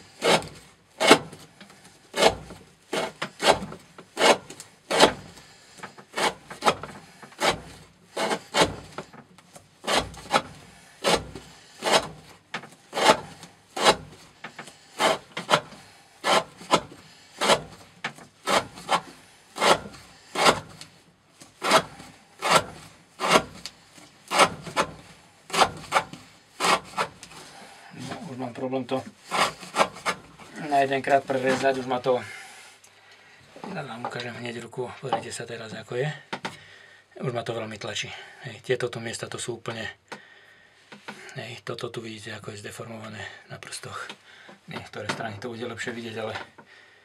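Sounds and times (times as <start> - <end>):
knife slicing through rope: 0.0 - 1.4, 2.1 - 9.1, 9.8 - 27.4, 29.2 - 30.2.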